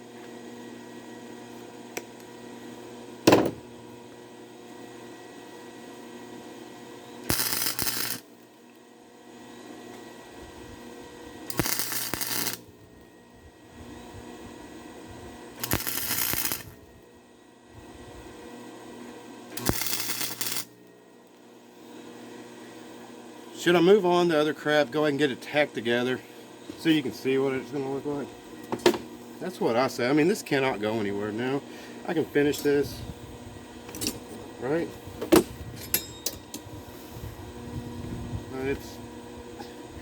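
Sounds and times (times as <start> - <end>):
steady welder hum: 0.0 - 40.0
welder crackling: 7.2 - 8.5, 11.4 - 13.1, 15.5 - 17.0, 19.5 - 21.4.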